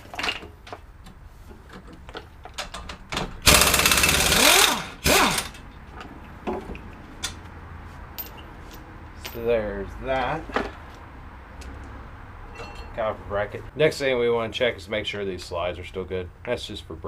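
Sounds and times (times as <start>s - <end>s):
tools clicking and knocking: 0.0s - 7.5s
impact wrench rattling: 2.5s - 5.7s.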